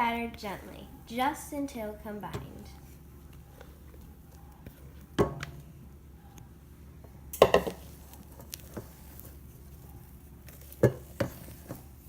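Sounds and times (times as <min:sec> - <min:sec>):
spatula scraping mixing bowl: 0:07.4 - 0:12.0.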